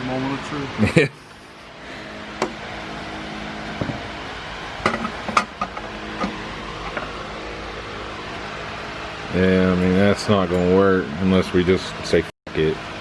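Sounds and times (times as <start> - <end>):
steady mechanical hum: 0.0 - 13.0
metal pipe clanking and knocking: 4.8 - 7.0.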